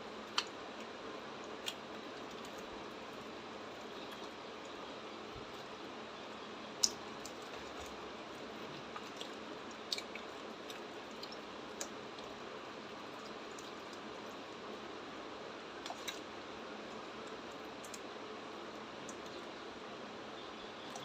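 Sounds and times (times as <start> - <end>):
sharp wet clicks: 0.2 - 5.8, 6.6 - 14.9, 15.8 - 16.3, 16.9 - 18.2, 18.8 - 19.6, 20.8 - 21.0
slime squishing: 6.8 - 14.4.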